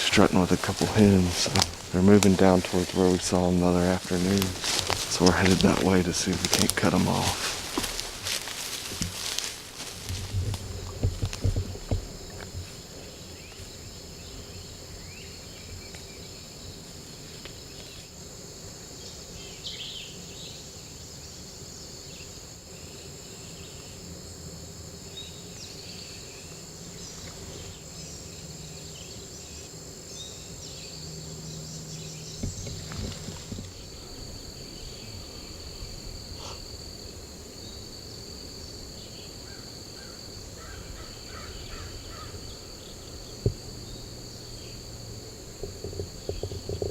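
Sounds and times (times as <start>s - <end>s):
low steady hum: 0.0s - 17.7s
insects trilling: 0.0s - 46.9s
songbird calls: 39.0s - 44.9s.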